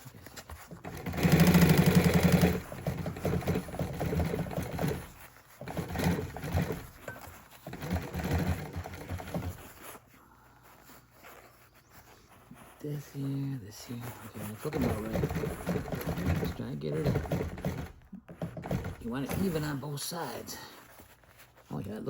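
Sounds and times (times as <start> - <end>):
sewing machine stitching: 0.0 - 10.0, 13.9 - 19.9.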